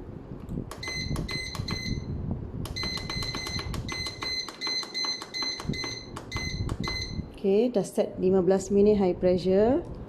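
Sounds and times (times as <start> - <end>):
pressure cooker button beeps: 0.7 - 2.1, 2.7 - 7.2.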